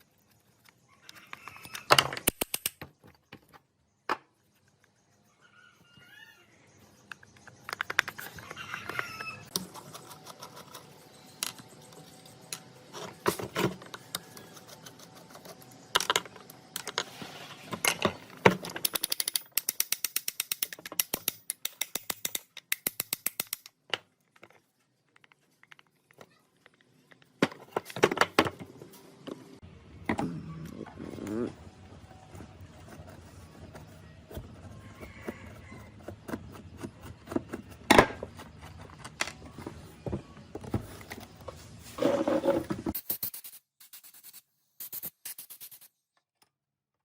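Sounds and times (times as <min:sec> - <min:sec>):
hand tools clicking on metal: 0:18.7 - 0:23.8
ratchet clicking: 0:18.8 - 0:23.7.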